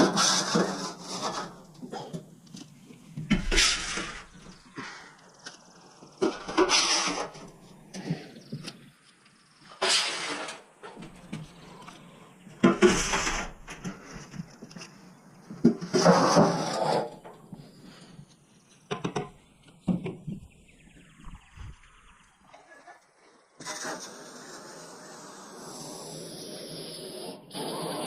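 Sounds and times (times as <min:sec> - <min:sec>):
scraping on steel: 0:03.3 - 0:04.9, 0:06.2 - 0:08.2, 0:09.7 - 0:14.7.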